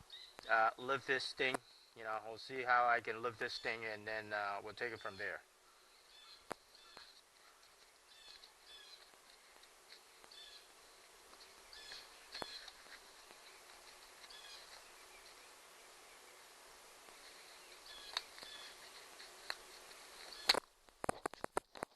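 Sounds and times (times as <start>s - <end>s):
faint bird chirps: 0.0s - 0.5s, 4.4s - 20.6s
steady background hiss: 0.0s - 21.9s.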